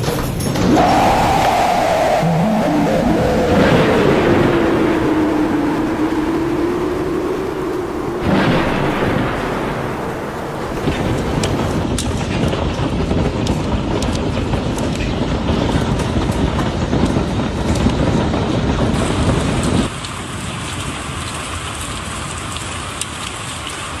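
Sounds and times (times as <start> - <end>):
deep wind rumble: 0.2 - 11.9
heavy rain: 0.5 - 11.9
hailstones ticking on a surface: 19.9 - 24.0.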